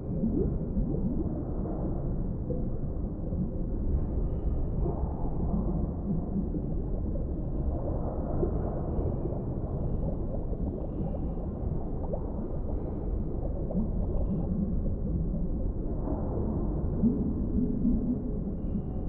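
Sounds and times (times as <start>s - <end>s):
deep water rumble: 0.0s - 19.0s
small gurgling blips: 0.0s - 19.0s.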